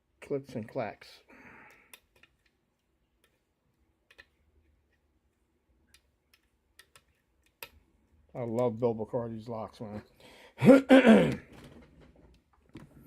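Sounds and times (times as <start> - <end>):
lock pick clicking pins: 5.9 - 7.8.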